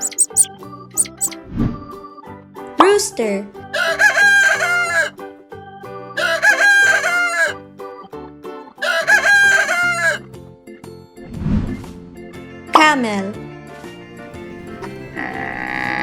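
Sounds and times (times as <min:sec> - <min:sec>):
rooster crowing: 0:03.8 - 0:05.1, 0:06.2 - 0:07.6, 0:08.8 - 0:10.2.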